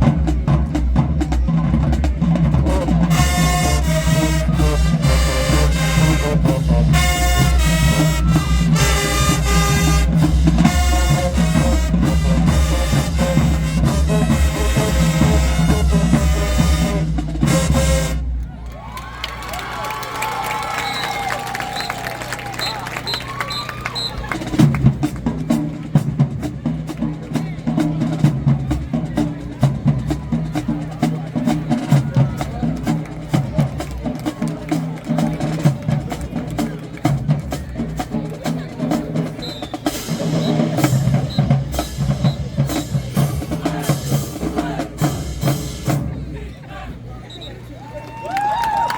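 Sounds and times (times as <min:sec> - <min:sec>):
snare drum: 0:00.0 - 0:18.5
bass drums pounding: 0:00.0 - 0:18.6
held brass notes: 0:00.0 - 0:18.6, 0:21.0 - 0:47.1
drumline beat: 0:00.0 - 0:48.9
brass section chords: 0:02.5 - 0:18.6.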